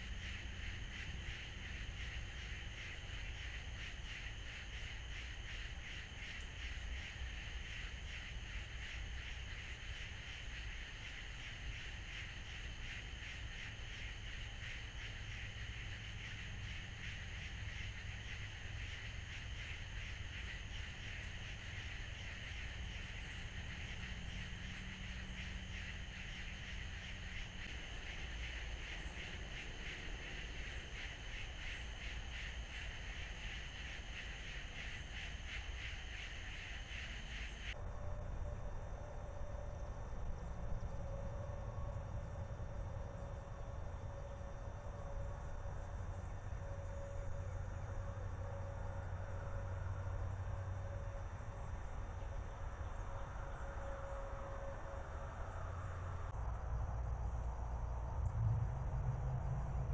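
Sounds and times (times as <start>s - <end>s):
low rumble: 55.3s - 59.9s.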